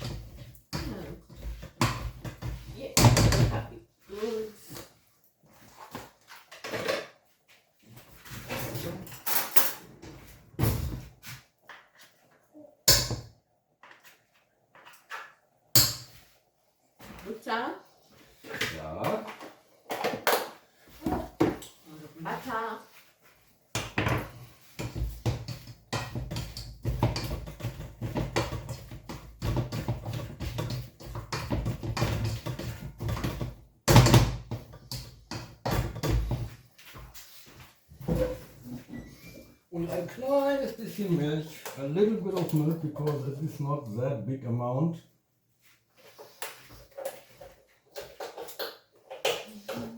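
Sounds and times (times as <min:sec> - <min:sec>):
kitchen thump: 0:00.0 - 0:03.8, 0:10.5 - 0:11.2, 0:12.8 - 0:13.4, 0:23.7 - 0:36.6
potato masher knocking in pot: 0:24.8 - 0:36.4.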